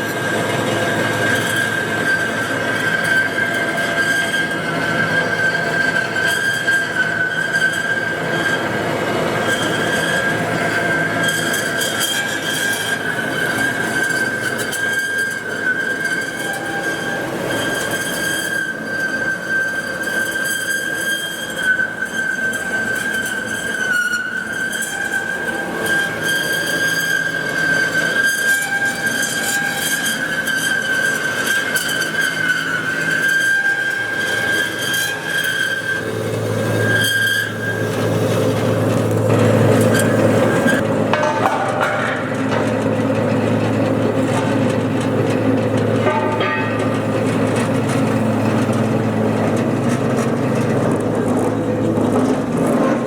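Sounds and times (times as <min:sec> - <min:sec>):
bandsaw running: 0:28.5 - 0:53.0.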